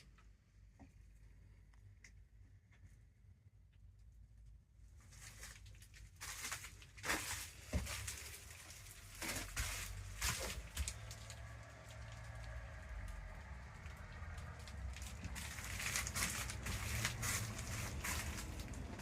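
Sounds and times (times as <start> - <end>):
rustling and crinkling handling: 4.9 - 19.0.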